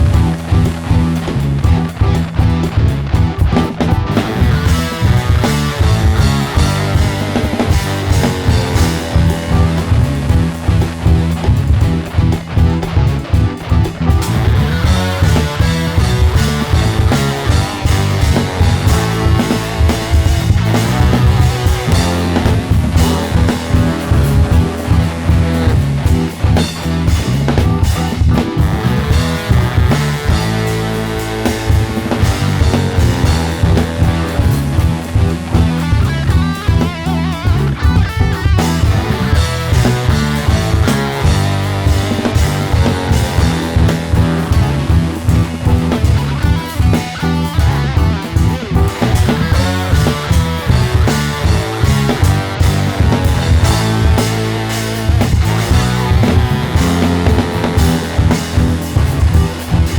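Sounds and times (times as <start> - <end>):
drum kit beat: 0.0 - 59.9
electric guitar playing: 0.0 - 59.9.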